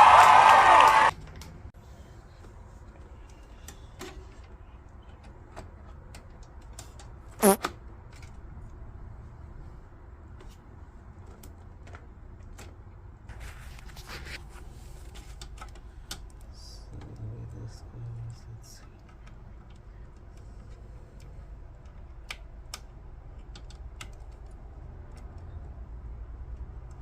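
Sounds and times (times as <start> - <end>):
steady low hum: 13.1 - 23.5.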